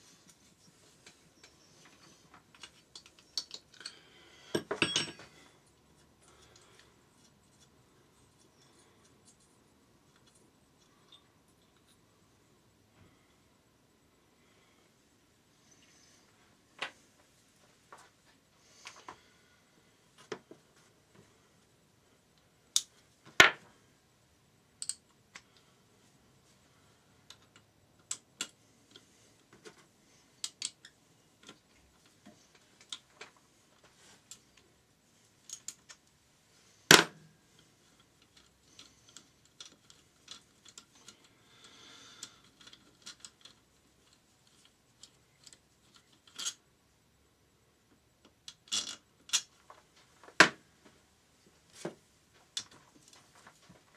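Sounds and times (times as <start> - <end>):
hand tools clicking and knocking: 1.0 - 5.4.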